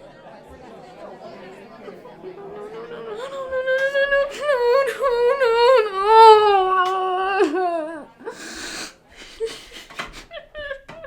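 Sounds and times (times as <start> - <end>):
person wailing loudly: 3.0 - 8.3.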